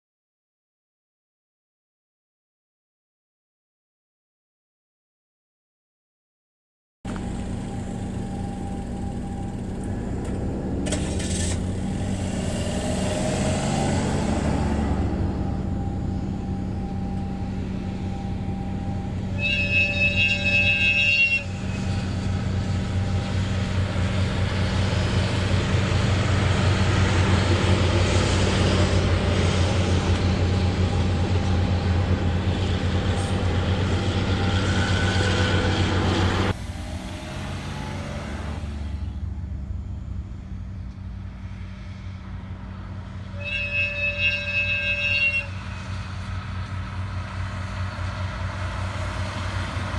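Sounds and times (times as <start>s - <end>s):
diesel engine rumble: 7.1s - 49.9s
locomotive horn blast: 14.4s - 23.8s, 28.0s - 36.5s, 43.1s - 46.3s
rolling train wheels: 15.0s - 36.6s, 41.0s - 49.9s.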